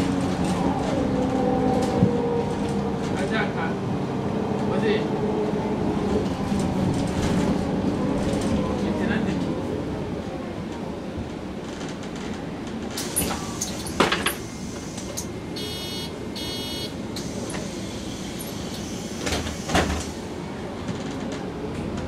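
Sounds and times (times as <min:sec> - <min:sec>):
bus engine idling: 0:12.4 - 0:22.0
door warning beeps: 0:15.6 - 0:17.0.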